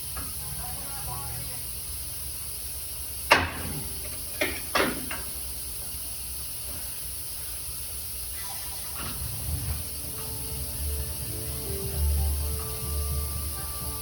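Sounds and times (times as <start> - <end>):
steady hiss: 0.0 - 14.0.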